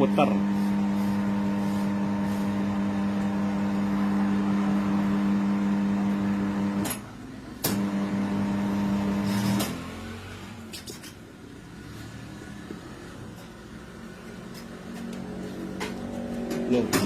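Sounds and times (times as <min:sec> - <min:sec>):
electric turntable motor humming: 0:00.2 - 0:06.8.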